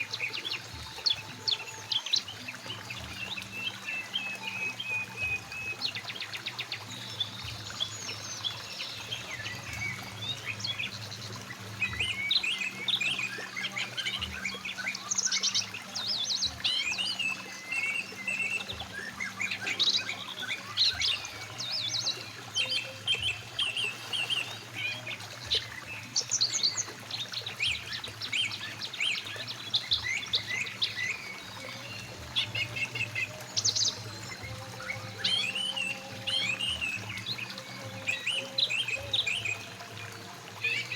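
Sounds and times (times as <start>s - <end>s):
river flowing: 0.0s - 40.9s
songbirds chirping and trilling: 0.0s - 40.9s.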